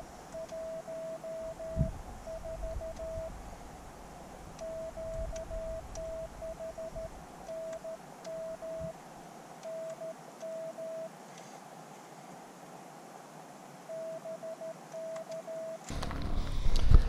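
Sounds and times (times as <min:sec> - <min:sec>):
morse code beeps: 0:00.4 - 0:03.3, 0:04.6 - 0:08.9, 0:09.7 - 0:11.1, 0:13.9 - 0:15.9.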